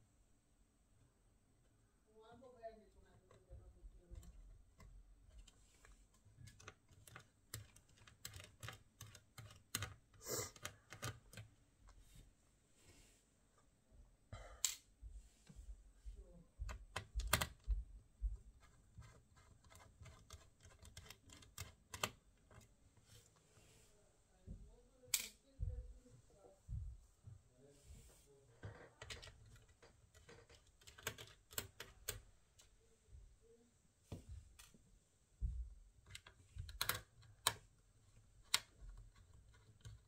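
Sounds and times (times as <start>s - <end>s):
clicks and taps on a laptop: 16.6s - 22.7s.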